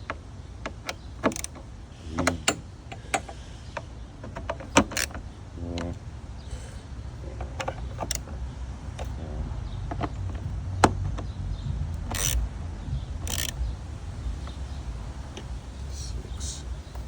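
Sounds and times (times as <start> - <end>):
hand tool clicking on plastic: 0.0 - 5.2, 7.3 - 9.2, 12.0 - 12.4, 13.2 - 13.7
steady low hum: 0.0 - 17.0
short scraping rasps: 12.0 - 17.0.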